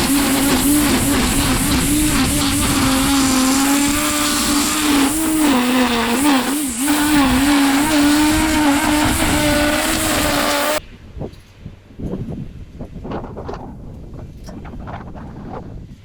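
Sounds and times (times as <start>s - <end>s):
small petrol engine running hard: 0.0s - 10.8s.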